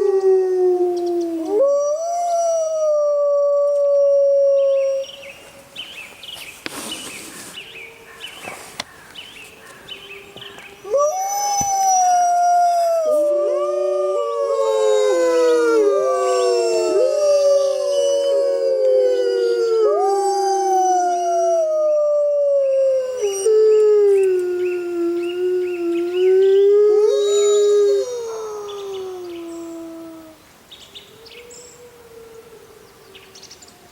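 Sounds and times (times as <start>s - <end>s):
wolves howling: 0.0s - 5.1s, 10.0s - 30.4s.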